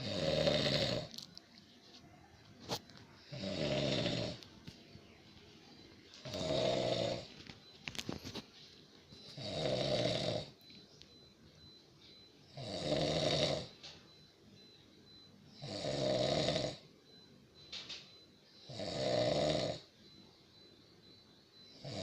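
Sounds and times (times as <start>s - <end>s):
person snoring: 0.0s - 1.1s, 3.2s - 4.4s, 6.2s - 7.3s, 9.3s - 10.5s, 12.5s - 13.7s, 15.6s - 16.8s, 18.6s - 19.9s, 21.8s - 22.0s.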